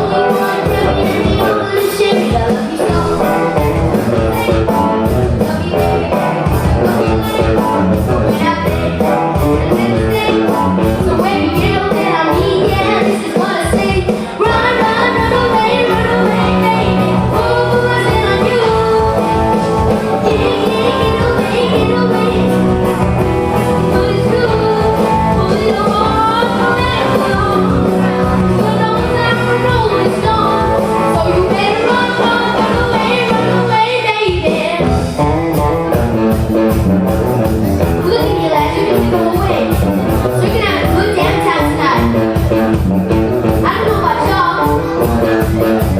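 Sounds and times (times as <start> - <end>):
lead vocal singing: 0.0 - 8.9, 9.6 - 34.9
live pop-rock band: 0.0 - 45.9.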